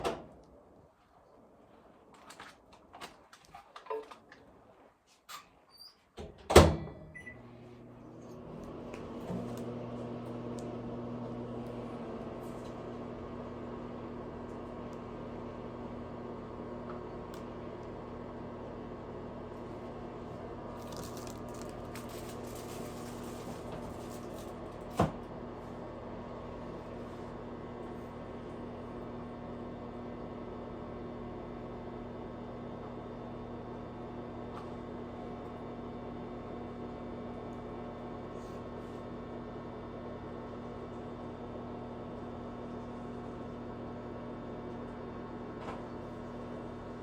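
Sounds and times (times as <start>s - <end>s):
microwave oven humming: 6.2s - 47.0s.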